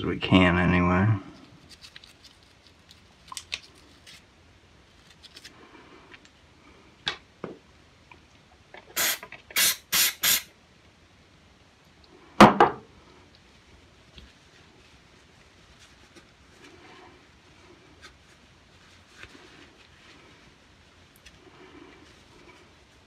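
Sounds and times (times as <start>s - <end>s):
aerosol sprays: 9.0s - 10.5s.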